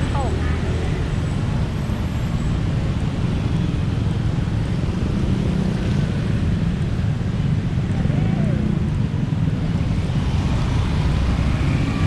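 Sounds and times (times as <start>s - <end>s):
low rumble of street traffic: 0.0s - 12.0s.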